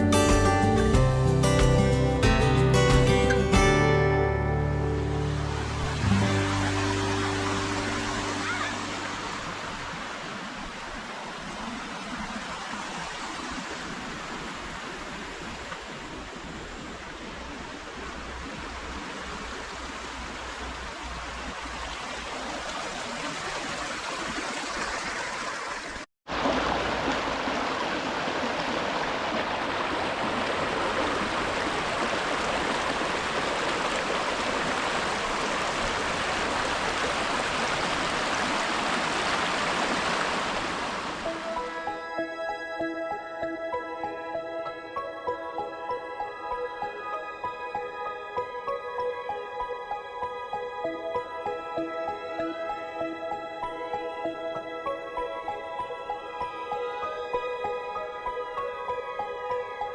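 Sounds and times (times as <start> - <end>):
flowing stream rushing: 0.0 - 42.9.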